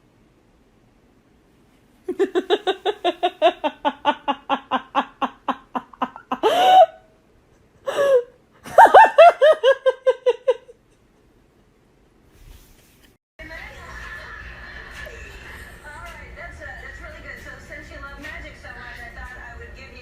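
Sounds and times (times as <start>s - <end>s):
person laughing: 2.1s - 7.0s, 7.8s - 10.8s.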